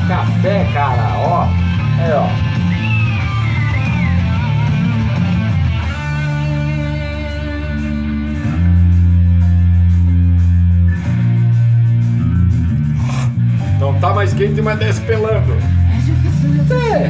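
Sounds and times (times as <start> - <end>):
rock music with electric guitar: 0.0 - 17.0.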